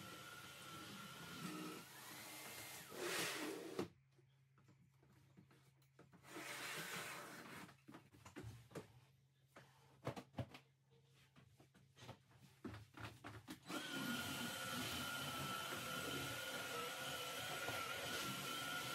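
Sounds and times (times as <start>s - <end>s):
knocks and rustles of handling: 7.4s - 13.7s
vacuum cleaner motor whine: 13.6s - 18.9s.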